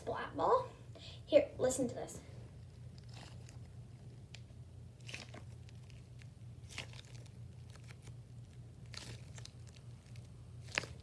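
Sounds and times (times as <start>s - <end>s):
fidget ball squishing: 2.5s - 11.0s.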